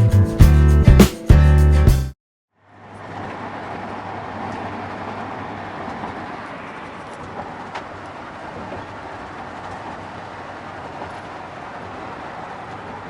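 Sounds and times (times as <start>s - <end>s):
moving vehicle rumbling: 2.7s - 13.0s.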